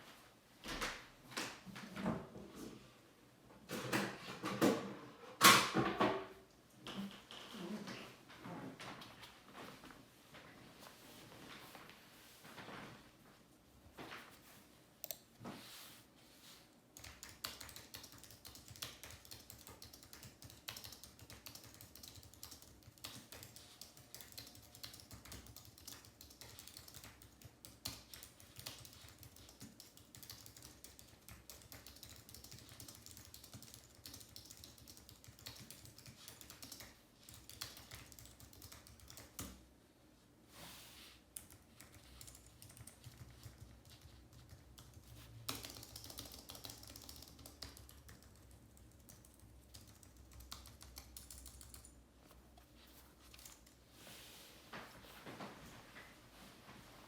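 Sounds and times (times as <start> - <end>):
typing on a computer keyboard: 17.0 - 39.6, 41.3 - 52.0, 53.2 - 53.8.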